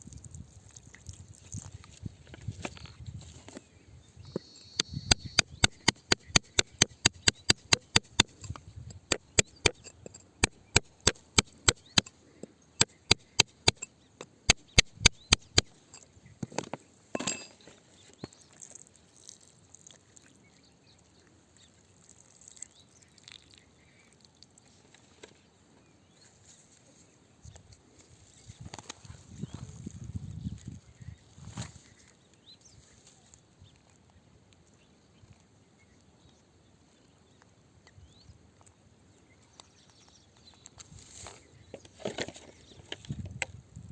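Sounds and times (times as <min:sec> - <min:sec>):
scraping on rock: 0:04.3 - 0:18.7
hammer striking rock: 0:04.8 - 0:12.1, 0:12.8 - 0:13.9, 0:14.5 - 0:15.7.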